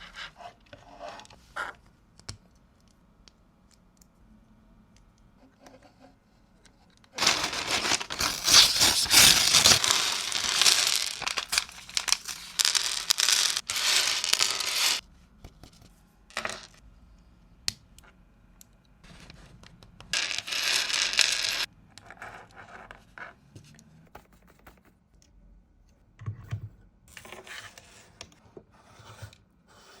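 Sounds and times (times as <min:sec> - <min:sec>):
packaging tearing and crinkling: 0:07.2 - 0:15.0.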